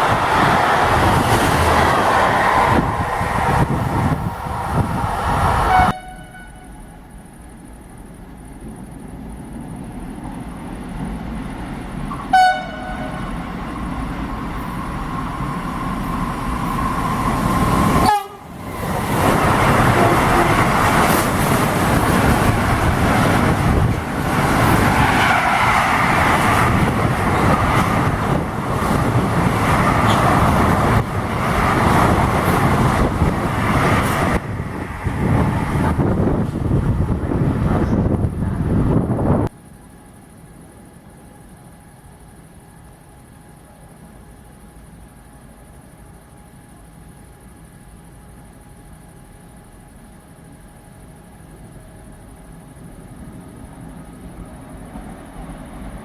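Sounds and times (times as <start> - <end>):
train passing rush: 0.0 - 40.6, 43.9 - 56.0
train horn toot: 5.7 - 6.9, 12.2 - 13.4, 18.0 - 18.5.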